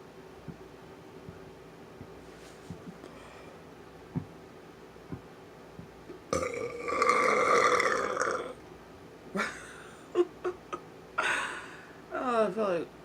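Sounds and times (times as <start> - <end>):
person burping loudly: 6.3 - 8.6.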